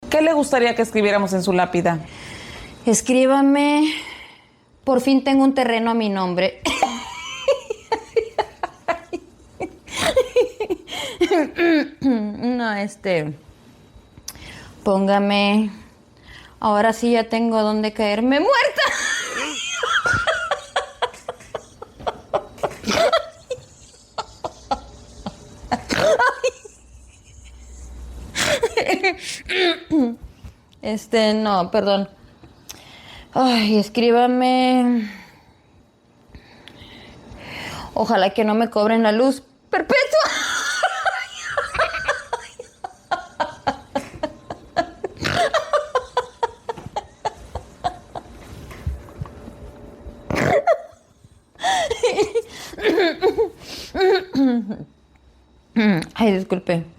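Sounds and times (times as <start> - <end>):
stifled laughing: 6.7 - 12.1, 18.8 - 30.1, 40.2 - 48.6, 50.3 - 54.9.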